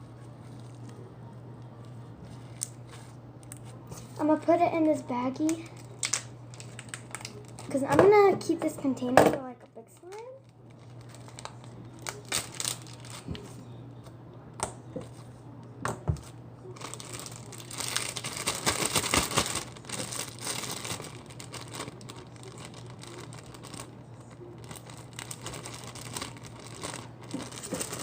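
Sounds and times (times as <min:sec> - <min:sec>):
plastic bag crinkling: 0:05.5 - 0:08.2, 0:10.0 - 0:13.4, 0:16.6 - 0:28.0.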